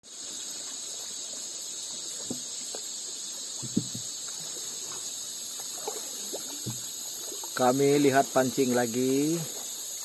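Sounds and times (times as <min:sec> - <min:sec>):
insects chorus: 0:00.0 - 0:10.0
soft knocks: 0:03.6 - 0:04.1.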